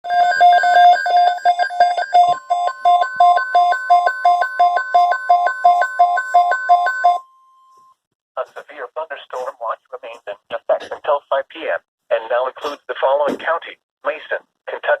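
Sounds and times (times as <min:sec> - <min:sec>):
steady warning alarm tone: 0:00.1 - 0:08.0.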